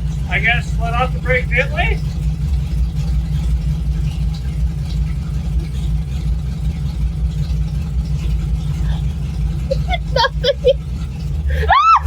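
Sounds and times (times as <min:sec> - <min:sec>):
vehicle engine running steadily: 0:00.0 - 0:12.0.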